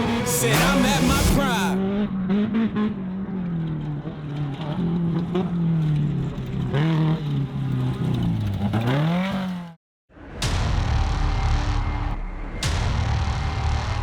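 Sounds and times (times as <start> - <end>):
race car engine revving: 0.0 - 9.8.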